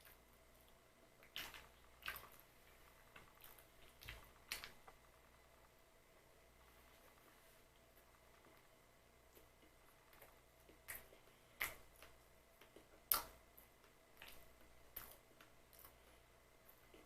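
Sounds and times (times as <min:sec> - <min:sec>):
eating pie clicks and snaps: 0:10.2 - 0:16.0.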